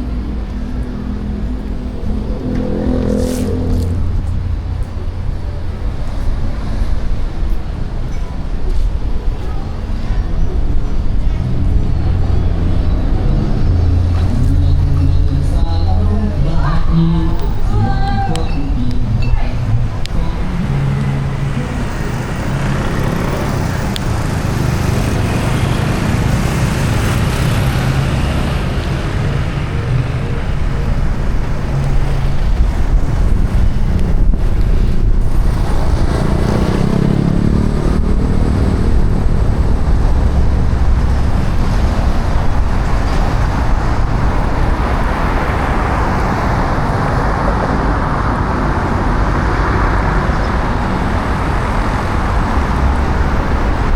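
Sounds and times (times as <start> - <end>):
car engine hum: 0.0 - 53.9
tyre and road noise: 0.0 - 53.9.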